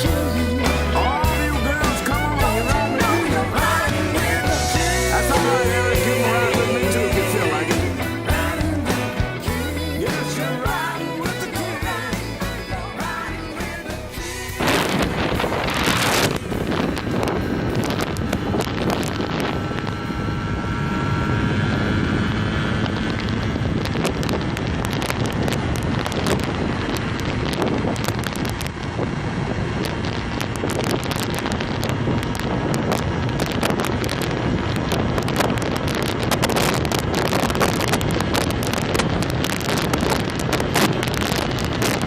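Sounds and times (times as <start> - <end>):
moped engine running: 0.0 - 42.0
wind buffeting microphone: 14.1 - 42.0.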